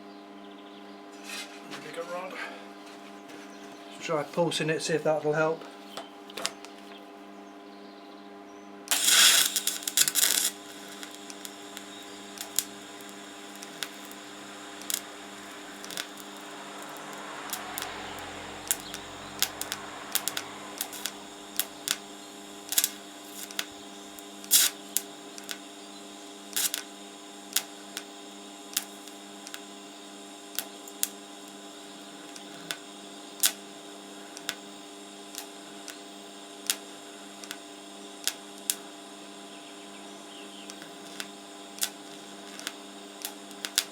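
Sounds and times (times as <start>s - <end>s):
welder humming: 8.8s - 43.9s.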